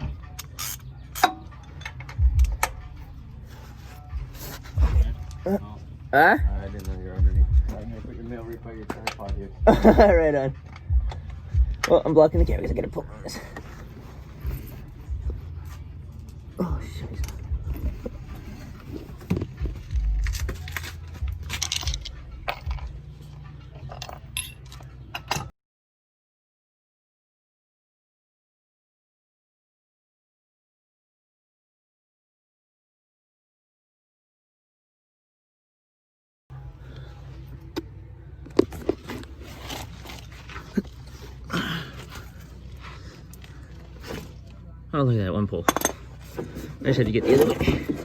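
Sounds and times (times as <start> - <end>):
metal tools clinking: 0.3 - 2.2, 16.1 - 25.5, 38.6 - 44.6, 45.6 - 48.0
dull low thumps: 2.2 - 3.2, 4.1 - 5.6, 6.4 - 8.5, 9.2 - 15.7, 16.6 - 23.0
steady low hum: 2.2 - 8.8.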